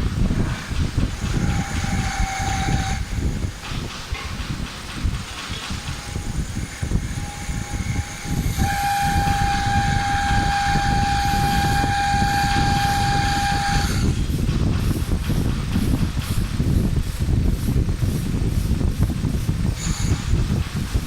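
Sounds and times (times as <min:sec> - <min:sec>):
wood lathe rumbling: 0:00.0 - 0:21.0
high-pitched whine: 0:01.4 - 0:03.2, 0:06.0 - 0:14.1.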